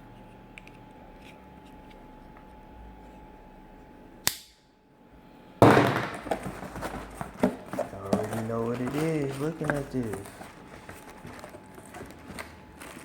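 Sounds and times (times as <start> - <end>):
packaging rustling and scraping: 6.0 - 13.0.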